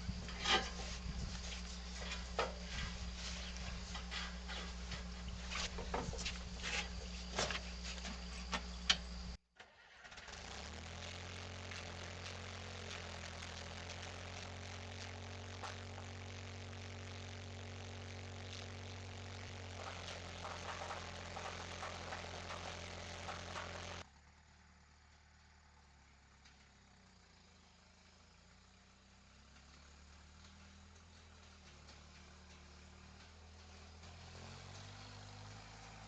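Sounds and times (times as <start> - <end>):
skid steer engine running: 0.0 - 9.4, 10.1 - 36.0
engine clicks and knocks: 19.7 - 24.0.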